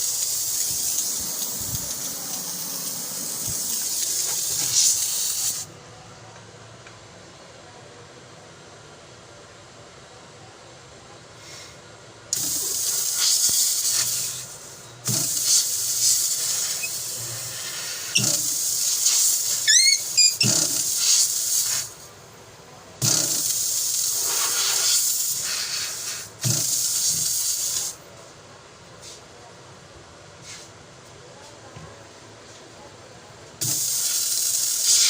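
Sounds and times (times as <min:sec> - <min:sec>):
pressurised gas hissing: 0:00.0 - 0:05.7, 0:11.4 - 0:22.1, 0:23.0 - 0:28.0, 0:33.6 - 0:35.0
short squeak: 0:19.5 - 0:20.6.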